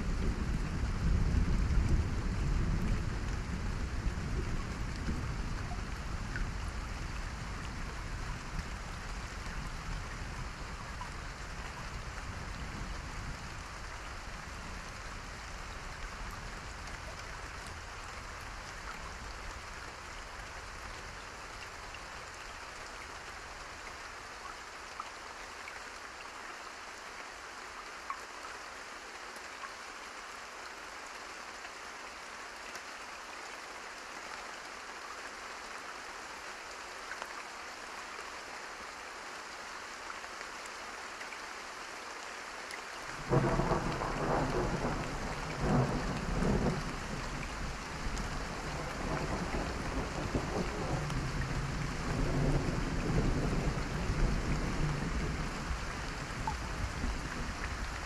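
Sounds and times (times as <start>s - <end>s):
steady rain falling: 0.0s - 58.0s
low thunder rumble: 43.2s - 58.0s.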